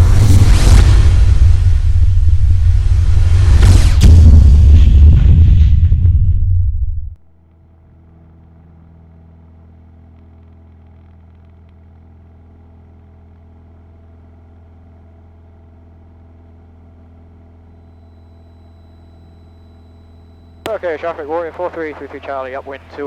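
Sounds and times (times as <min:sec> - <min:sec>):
airplane engine and propeller drone: 0:07.4 - 0:23.0.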